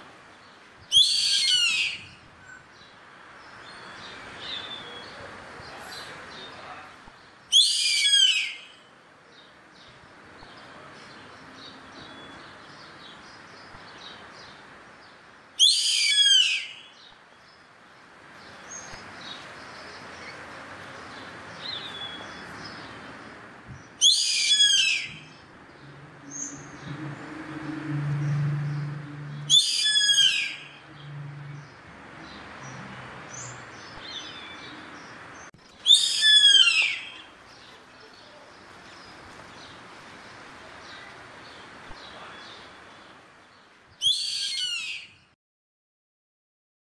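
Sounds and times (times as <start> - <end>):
raptor harsh screeching calls: 0.9 - 2.1, 7.5 - 8.8, 15.6 - 16.9, 24.0 - 25.4, 29.3 - 31.2, 35.8 - 37.3, 44.0 - 45.2.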